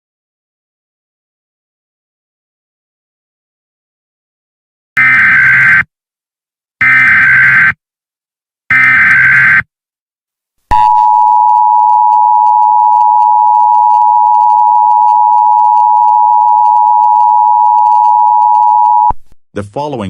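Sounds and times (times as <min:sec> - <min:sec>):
steady two-tone alarm: 0:05.0 - 0:05.9, 0:06.8 - 0:07.8, 0:08.7 - 0:09.7.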